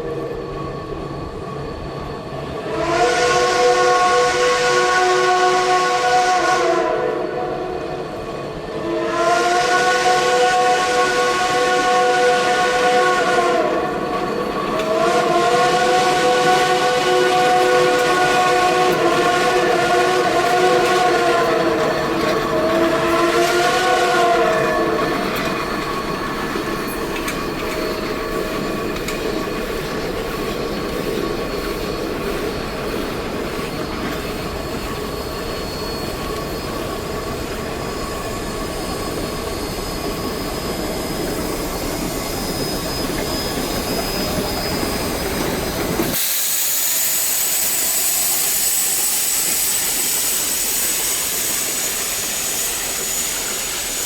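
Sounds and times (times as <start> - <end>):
steam locomotive running noise: 0.0 - 54.0
steam whistle chord: 2.6 - 8.1, 8.8 - 25.6
faint wheel squeal: 24.4 - 54.0
steady high hiss: 25.0 - 54.0.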